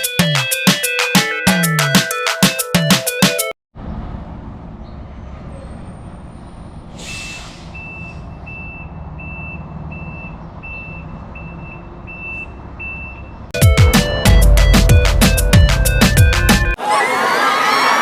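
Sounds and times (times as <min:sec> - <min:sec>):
short hiss: 0:06.9 - 0:07.8
reversing alarm beeping: 0:07.7 - 0:14.8
truck engine running: 0:13.6 - 0:16.8.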